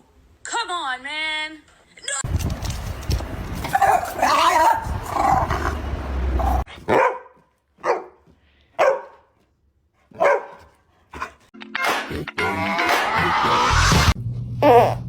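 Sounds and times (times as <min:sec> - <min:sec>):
dog barking: 0:03.7 - 0:05.6, 0:06.3 - 0:09.4, 0:10.1 - 0:11.4.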